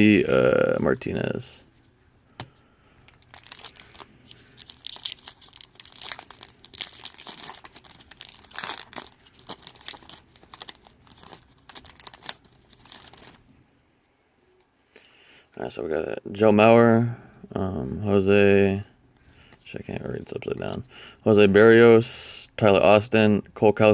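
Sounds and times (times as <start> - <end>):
plastic wrapper tearing and crinkling: 3.1 - 13.5.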